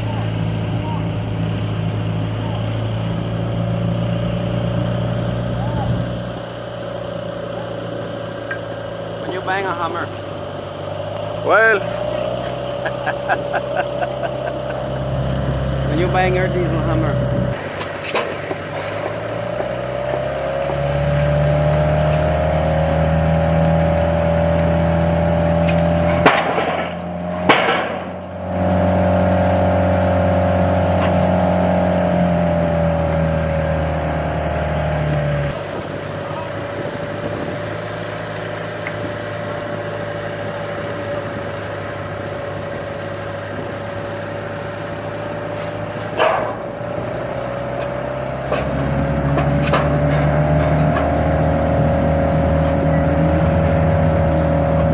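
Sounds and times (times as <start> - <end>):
engine running with high whine: 0.0 - 54.9
sharp knocks: 26.0 - 28.2.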